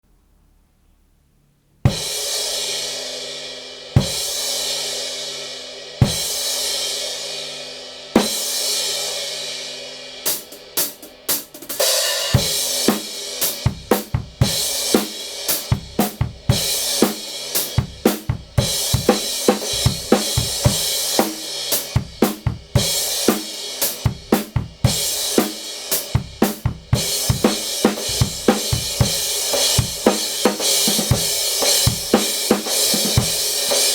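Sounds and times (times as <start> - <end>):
snare drum: 10.3 - 33.9
bass drum: 12.4 - 23.4, 24.0 - 33.6.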